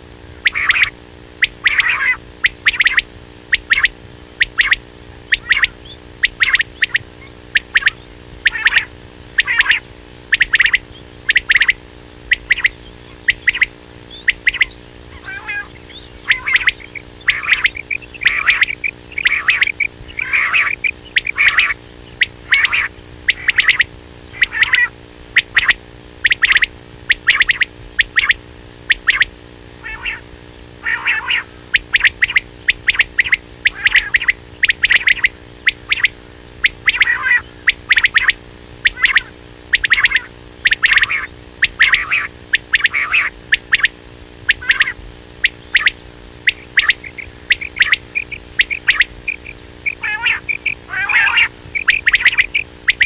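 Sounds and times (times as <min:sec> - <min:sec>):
faint steady hum: 0:00.0 - 0:53.0
quail calls: 0:00.3 - 0:53.0.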